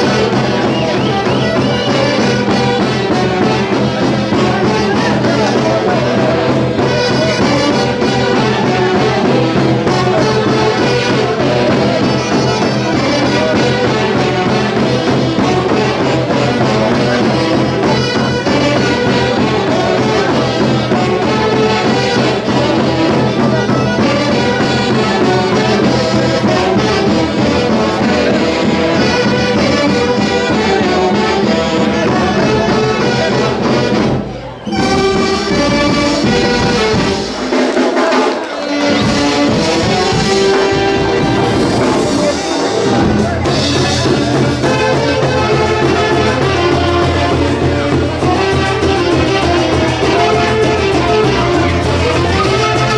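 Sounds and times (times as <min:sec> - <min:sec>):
folk orchestra with wind instruments: 0:00.0 - 0:52.9.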